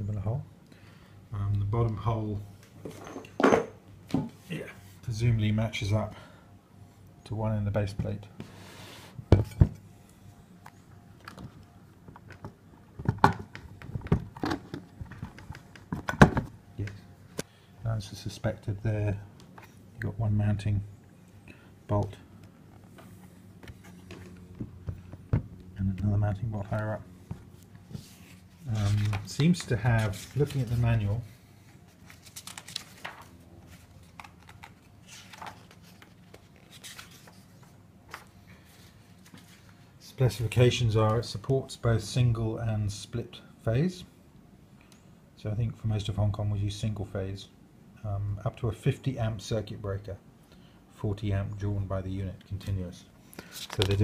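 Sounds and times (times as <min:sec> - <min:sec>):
manual pages rustling and turning: 0:22.8 - 0:39.9, 0:52.6 - 0:54.0.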